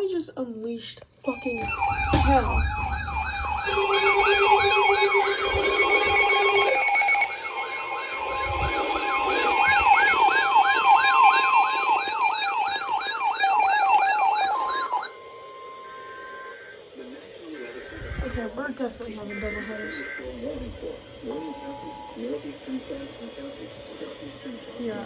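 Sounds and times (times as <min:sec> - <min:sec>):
siren-like sweeping alarm tone: 0:01.2 - 0:16.8, 0:17.5 - 0:20.5
steady alarm tones: 0:01.2 - 0:25.0
fast high warble: 0:01.3 - 0:15.1.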